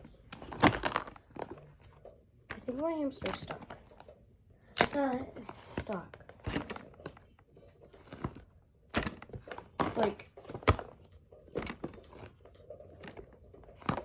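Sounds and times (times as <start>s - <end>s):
knocks clicks and rustles: 0.0s - 14.0s
person speaking: 2.5s - 3.9s, 4.8s - 6.8s, 9.8s - 10.5s.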